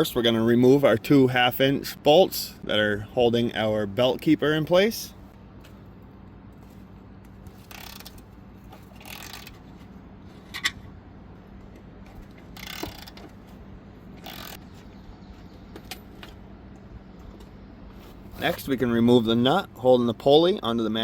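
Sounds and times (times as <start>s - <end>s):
steady low hum: 0.0s - 21.0s
ratchet wrench clicking: 7.7s - 8.2s, 9.0s - 9.5s, 12.6s - 13.2s, 14.2s - 14.6s.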